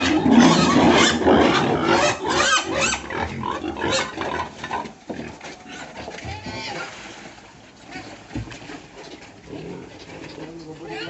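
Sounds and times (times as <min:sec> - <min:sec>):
pigs squealing and grunting: 0:00.0 - 0:07.0, 0:09.4 - 0:11.0.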